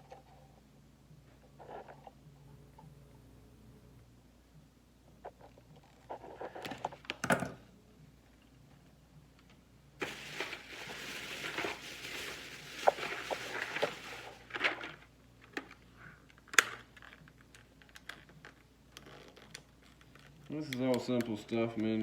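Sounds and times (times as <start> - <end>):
scraping and rustling of wiring: 10.0 - 21.2.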